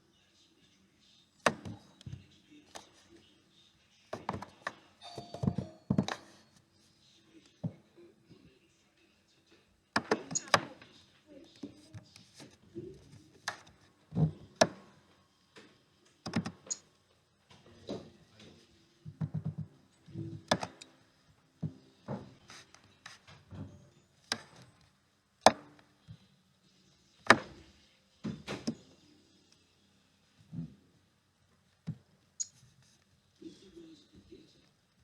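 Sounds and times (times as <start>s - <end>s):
plastic parts clicking and knocking: 16.2s - 16.8s, 20.4s - 20.9s.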